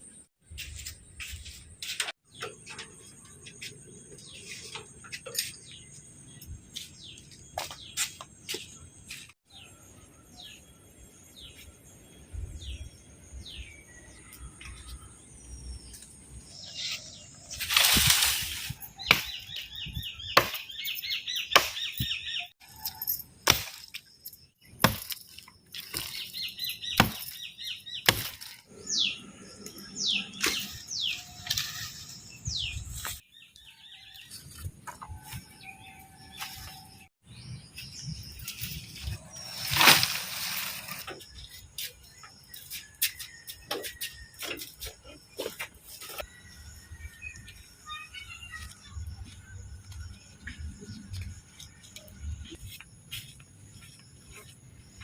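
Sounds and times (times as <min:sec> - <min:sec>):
small birds chirping: 0:00.5 - 0:55.0.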